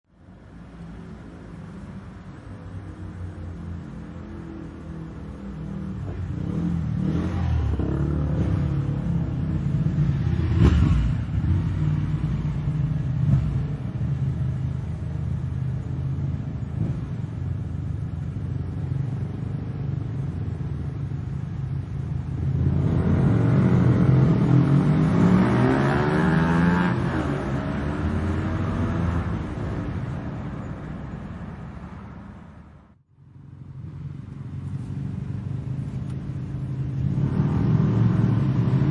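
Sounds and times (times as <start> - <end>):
motorcycle engines revving: 3.0 - 31.3, 33.6 - 38.9
motorcycle passing by: 6.2 - 13.8, 22.6 - 30.1, 36.8 - 38.9.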